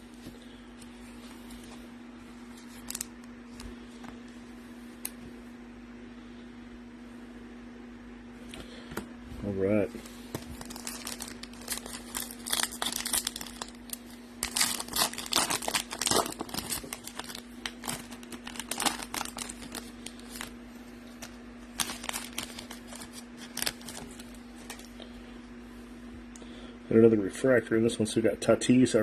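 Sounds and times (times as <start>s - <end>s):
steady low hum: 0.0s - 29.0s
cards crackling when handled: 2.6s - 4.2s, 10.0s - 20.6s, 21.2s - 25.0s
foil wrapper tearing and crinkling: 2.7s - 3.1s, 10.6s - 20.6s, 21.2s - 24.9s.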